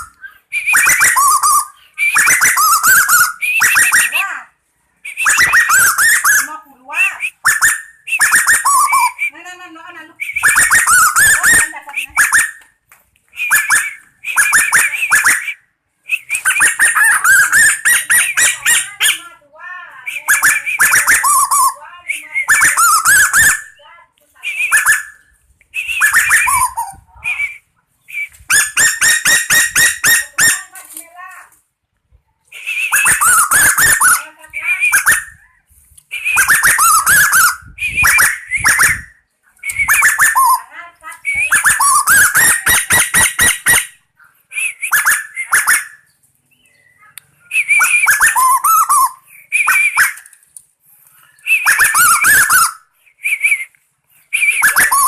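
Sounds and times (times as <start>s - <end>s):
bird peeping calls: 0.0s - 4.1s, 5.1s - 6.5s, 53.6s - 55.0s
bird calling in harsh notes: 0.0s - 4.4s, 5.1s - 12.7s, 13.4s - 19.4s, 20.1s - 23.8s, 24.6s - 30.8s, 32.6s - 50.4s, 51.3s - 53.7s, 54.4s - 55.0s.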